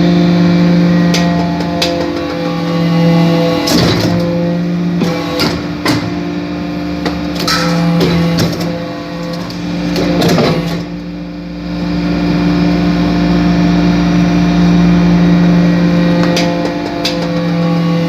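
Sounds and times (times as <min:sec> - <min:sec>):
metallic knocks: 0:07.4 - 0:08.6.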